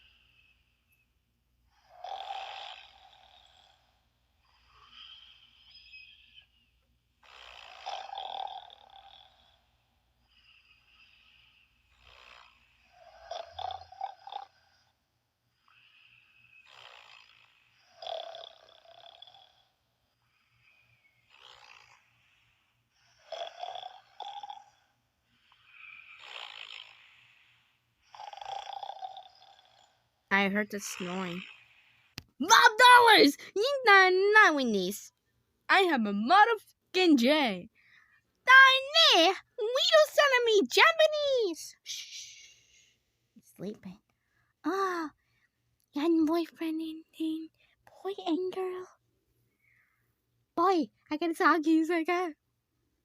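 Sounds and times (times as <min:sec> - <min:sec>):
loud rasping snores: 0:01.7 - 0:06.5, 0:07.2 - 0:32.2.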